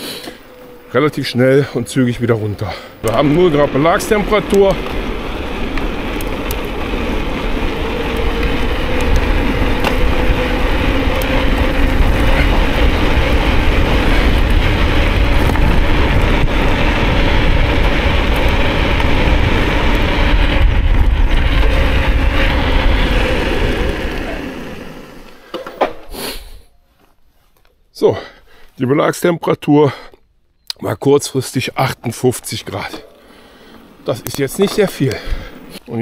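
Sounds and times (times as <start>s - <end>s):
bike tyres humming on ground: 0.0s - 26.3s, 31.0s - 36.0s
wind buffeting microphone: 0.5s - 25.1s.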